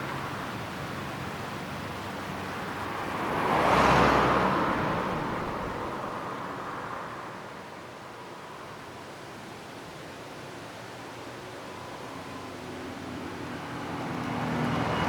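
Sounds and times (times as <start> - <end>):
car passing by: 1.2 - 7.9, 11.7 - 15.0.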